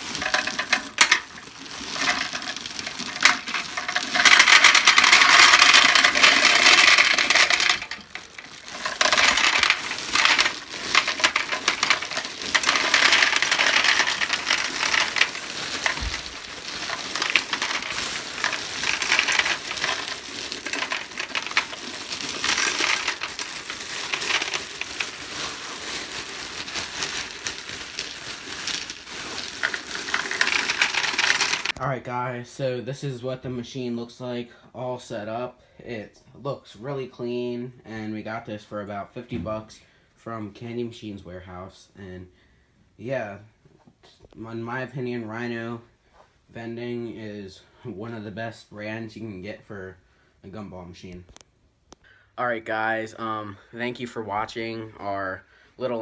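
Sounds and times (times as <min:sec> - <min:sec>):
gumballs clattering into machine: 0:00.0 - 0:31.8.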